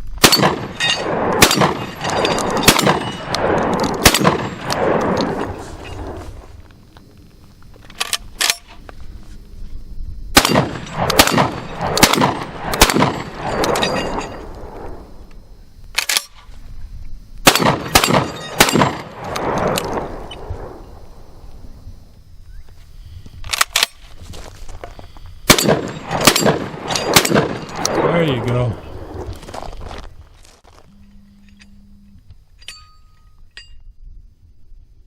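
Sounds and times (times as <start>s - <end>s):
shotgun shots with echo: 0.2s - 5.4s, 10.4s - 13.7s, 17.4s - 20.8s, 25.5s - 28.7s.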